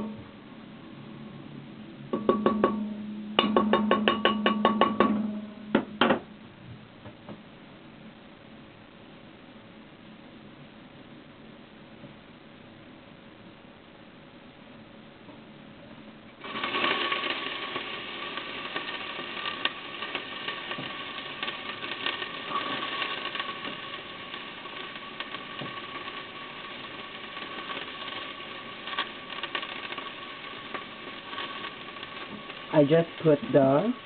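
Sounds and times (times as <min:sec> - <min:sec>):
garlic and onions sizzling in oil: 0:00.0 - 0:06.5, 0:15.4 - 0:34.0.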